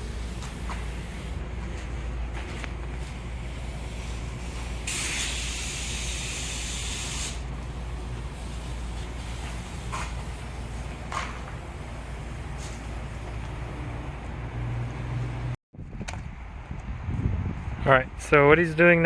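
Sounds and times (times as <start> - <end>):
spray hiss: 3.4 - 7.5.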